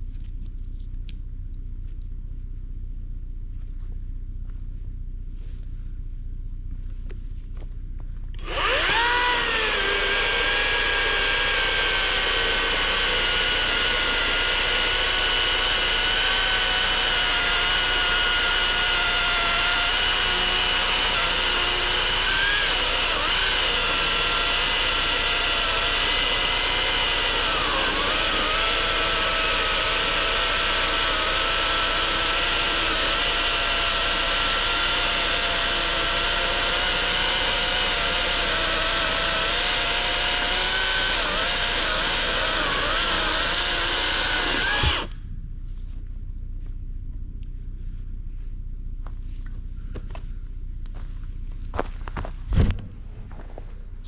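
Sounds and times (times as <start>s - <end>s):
electric chainsaw cutting log: 8.4s - 45.2s.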